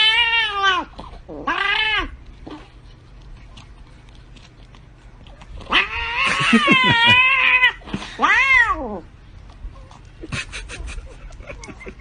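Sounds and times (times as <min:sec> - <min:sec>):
cat yowling: 0:00.0 - 0:02.2, 0:05.6 - 0:09.0.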